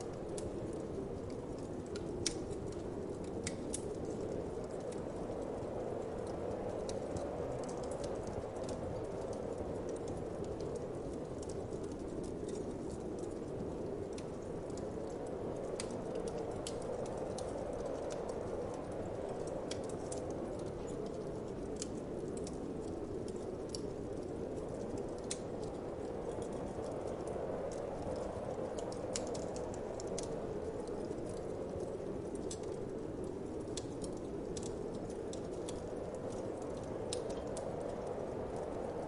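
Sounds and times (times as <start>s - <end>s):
wood fire crackling: 0.0s - 39.0s.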